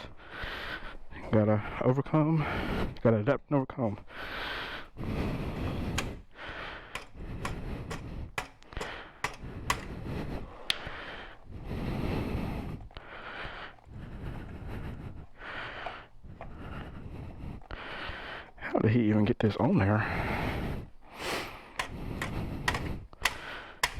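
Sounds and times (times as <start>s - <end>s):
man breathing hard: 0.0s - 3.0s, 4.0s - 18.6s, 19.9s - 23.9s
metallic clicks of hand tools: 5.9s - 10.0s, 21.7s - 23.9s.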